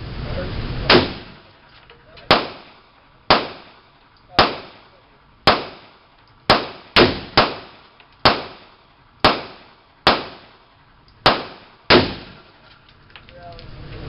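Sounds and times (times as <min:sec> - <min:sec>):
pistol shots echoing: 0:02.3 - 0:10.6, 0:11.2 - 0:12.5.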